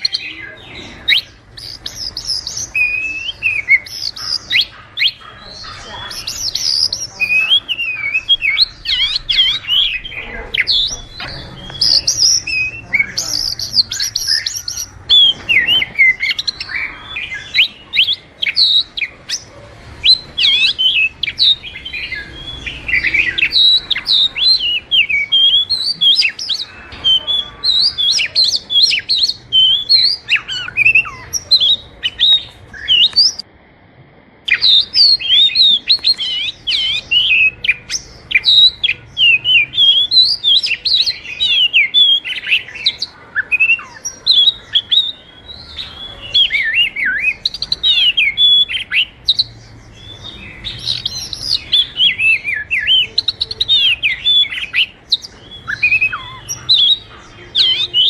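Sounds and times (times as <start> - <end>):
bird singing whistles and chirps: 0.0 - 5.2, 5.8 - 33.4, 34.5 - 58.0.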